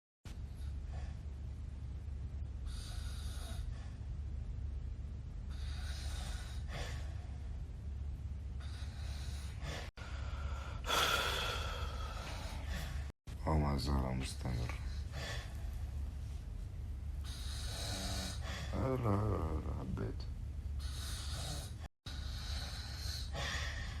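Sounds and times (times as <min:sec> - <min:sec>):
low hum: 0:00.3 - 0:24.0
man snoring: 0:17.3 - 0:19.8.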